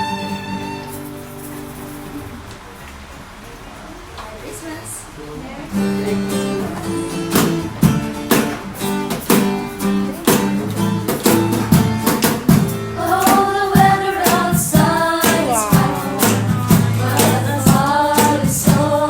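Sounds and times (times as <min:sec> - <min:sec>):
acoustic guitar strumming: 0:00.0 - 0:03.5, 0:05.7 - 0:19.0
person singing: 0:13.0 - 0:19.0.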